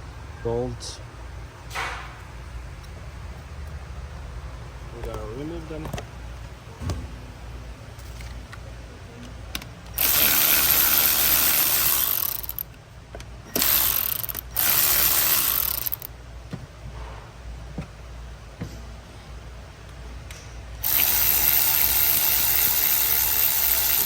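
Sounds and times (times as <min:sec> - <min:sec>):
power ratchet spinning bolts: 0:10.0 - 0:12.7, 0:13.5 - 0:16.1, 0:20.8 - 0:24.0.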